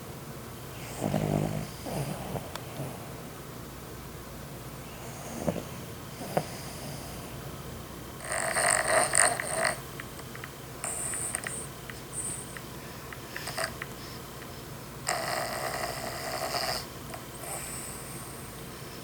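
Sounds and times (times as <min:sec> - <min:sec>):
dog snoring: 0:00.8 - 0:03.1, 0:05.0 - 0:07.3, 0:08.2 - 0:09.9, 0:10.8 - 0:12.6, 0:13.4 - 0:13.8, 0:15.0 - 0:18.5.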